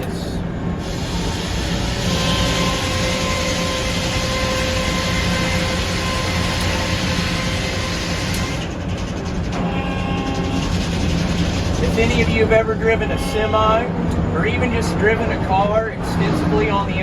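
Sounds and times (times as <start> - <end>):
mill machinery running: 0.0 - 17.0
sawmill saw cutting log: 0.8 - 8.7.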